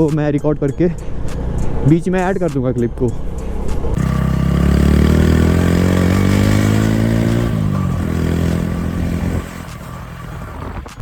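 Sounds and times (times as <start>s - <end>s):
motorcycle engine revving: 3.6s - 11.0s.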